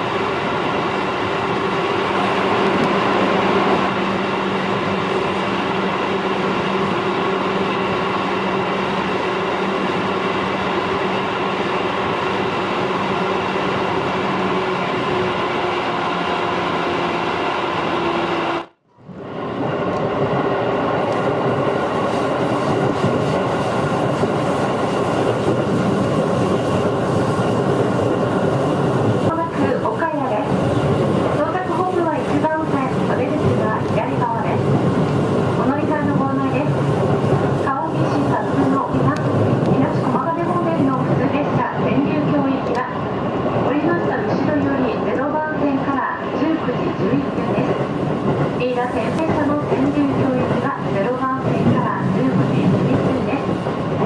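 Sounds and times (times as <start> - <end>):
train wheels rumbling on rails: 0.0 - 54.0.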